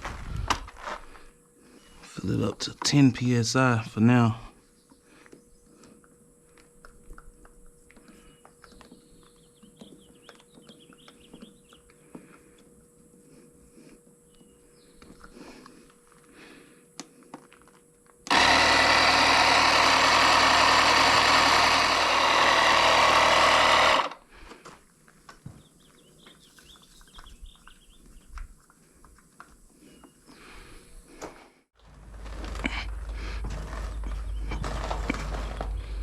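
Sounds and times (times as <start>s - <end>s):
air compressor running: 18.3s - 24.4s, 31.8s - 36.0s.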